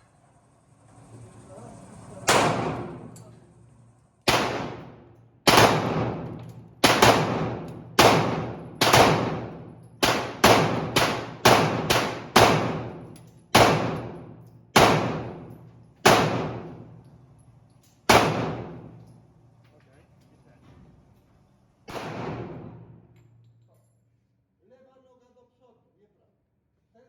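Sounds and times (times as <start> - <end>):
pistol shots echoing indoors: 2.3 - 3.3, 4.2 - 19.3, 21.8 - 23.6.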